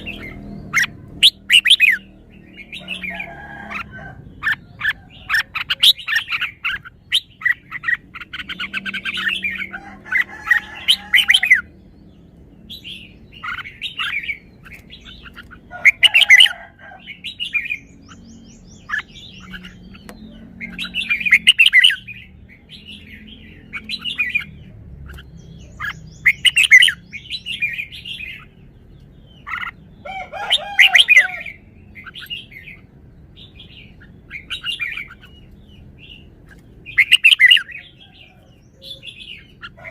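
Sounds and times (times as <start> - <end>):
bulbul singing: 0.0 - 39.9.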